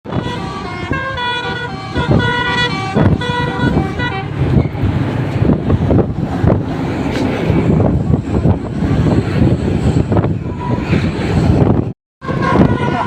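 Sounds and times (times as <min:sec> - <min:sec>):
wind: 0:00.0 - 0:13.0
multi-tone musical air horns: 0:00.1 - 0:04.6, 0:12.2 - 0:13.0
passing traffic: 0:00.1 - 0:13.0.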